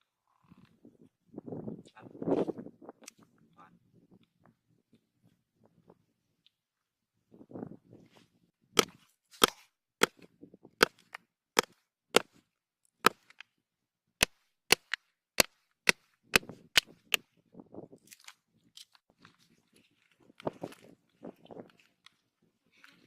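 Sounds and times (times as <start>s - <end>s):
wood chopping strikes: 8.8s - 10.2s, 14.2s - 17.0s.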